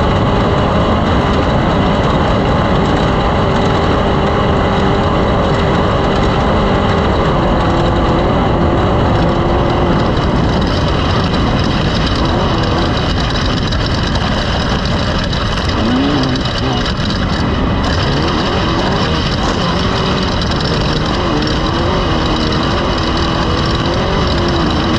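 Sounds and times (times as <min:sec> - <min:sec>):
engine running loudly: 0:00.0 - 0:24.9.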